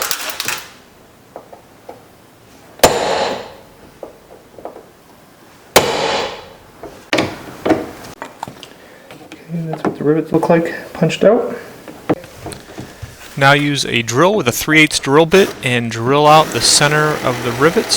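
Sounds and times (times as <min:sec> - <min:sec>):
hammer striking metal punch: 0:02.8 - 0:03.6, 0:05.8 - 0:06.6.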